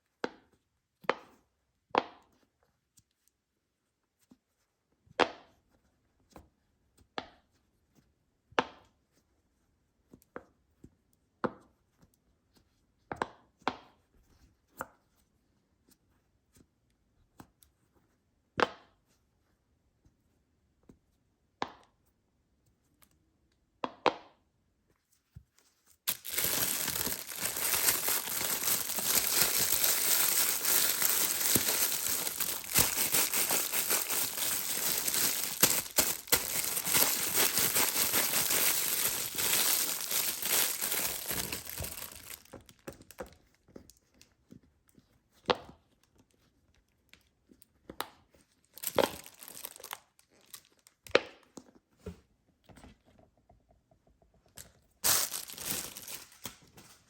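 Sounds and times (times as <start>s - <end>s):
plastic packaging crinkling: 26.1s - 43.1s, 48.7s - 50.9s, 55.0s - 57.0s.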